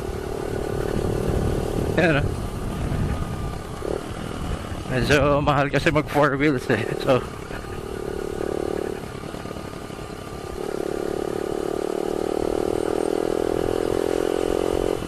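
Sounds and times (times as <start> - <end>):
motorcycle engine cruising: 0.0 - 15.0
road and wind noise: 0.0 - 15.0.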